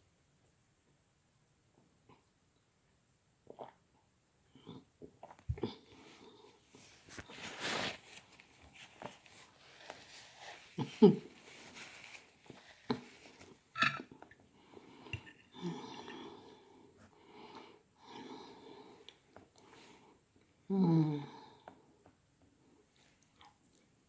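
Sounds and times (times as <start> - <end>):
breaths: 14.5 - 22.0
chewing and wet mouth noises: 23.0 - 23.9.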